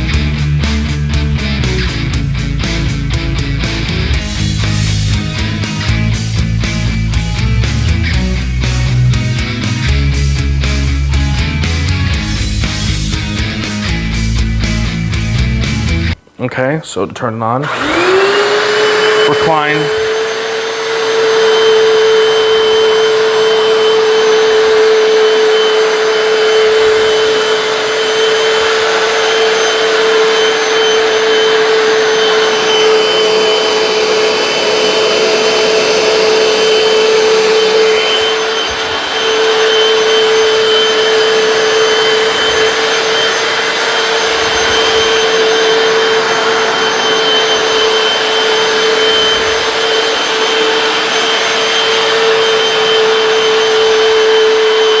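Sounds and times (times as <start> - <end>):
floor cleaner motor whine: 17.6 - 55.0
suction noise: 17.6 - 55.0.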